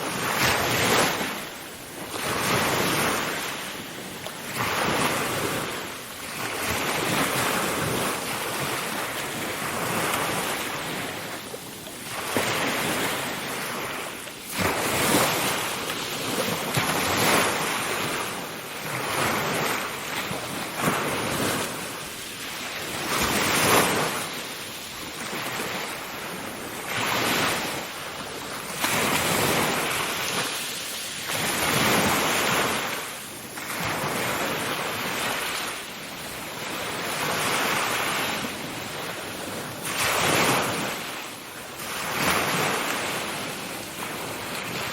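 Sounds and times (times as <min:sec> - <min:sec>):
ocean waves washing ashore: 0:00.0 - 0:44.9.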